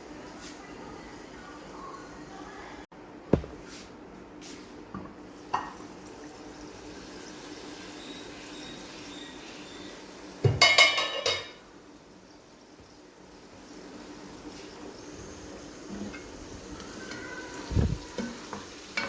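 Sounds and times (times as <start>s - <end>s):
dishes and utensils clinking: 10.5s - 11.6s.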